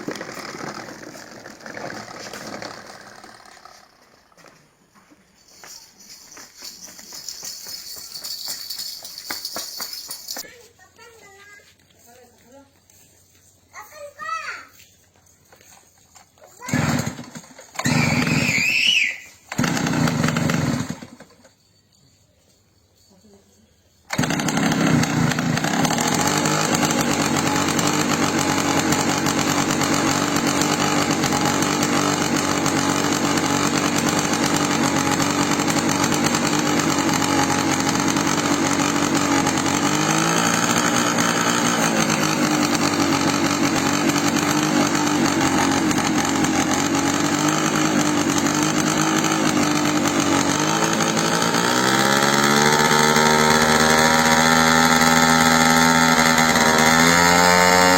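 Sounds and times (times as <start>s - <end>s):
model airplane engine running: 24.1s - 57.9s.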